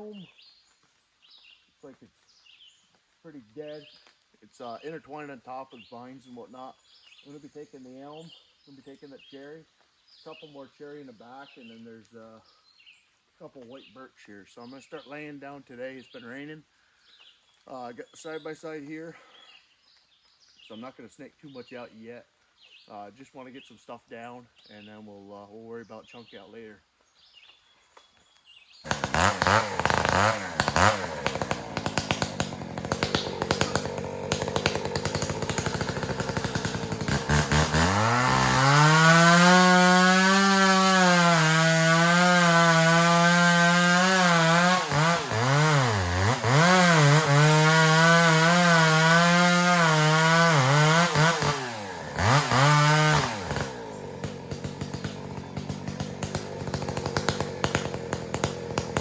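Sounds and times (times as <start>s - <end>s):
chainsaw cutting wood: 28.8s - 59.0s.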